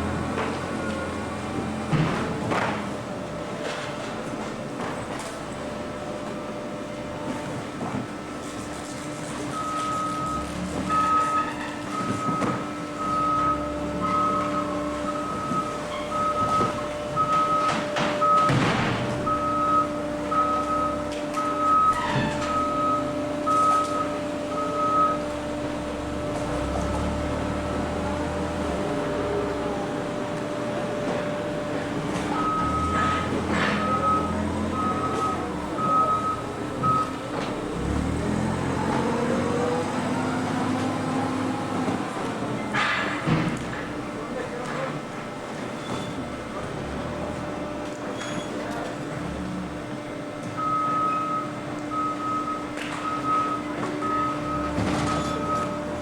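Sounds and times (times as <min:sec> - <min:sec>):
baler machinery humming: 0:05.5 - 0:42.8.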